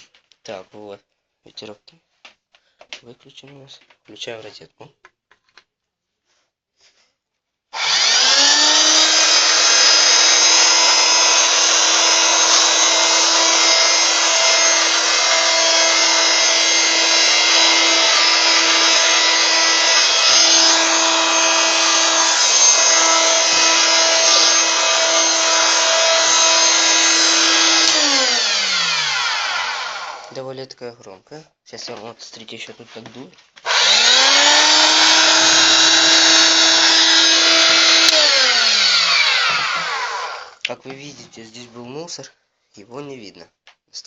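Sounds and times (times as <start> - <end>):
vacuum cleaner motor whine: 7.8 - 30.3, 33.7 - 40.6.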